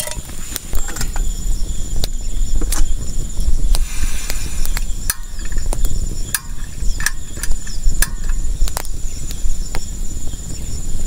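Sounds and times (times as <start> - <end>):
crickets chirping: 0.0 - 11.0
sharp clicks and knocks: 4.7 - 8.9.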